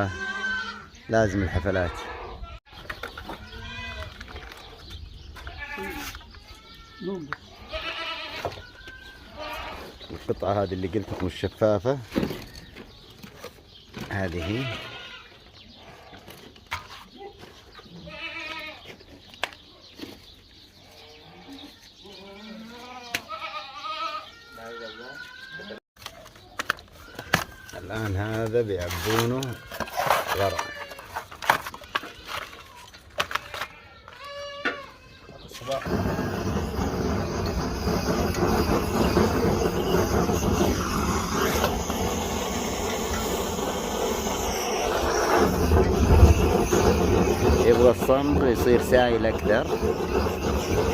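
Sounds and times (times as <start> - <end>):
goats bleating: 0.0 - 2.6, 5.5 - 9.9, 18.0 - 18.8, 22.1 - 25.8
gas torch roaring hiss: 35.7 - 50.9.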